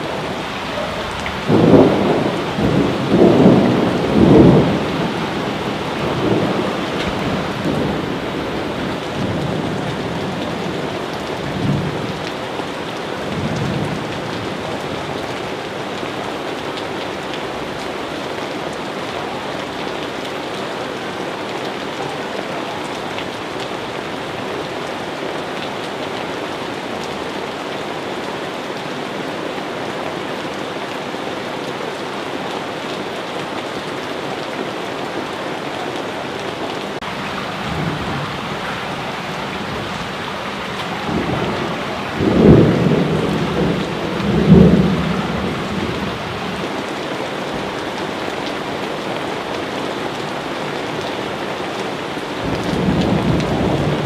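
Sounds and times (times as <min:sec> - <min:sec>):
steady rain: 0:00.0 - 0:54.0
low thunder rumbles: 0:00.1 - 0:12.2, 0:37.0 - 0:46.7, 0:52.4 - 0:54.0.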